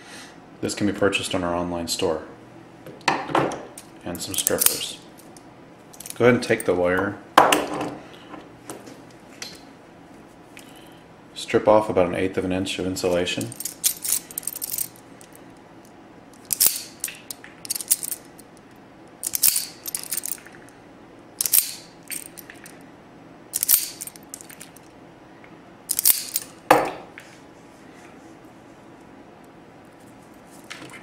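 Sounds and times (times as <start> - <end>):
wire strippers clicking shut: 16.4 - 18.2, 21.4 - 22.7, 25.9 - 26.5.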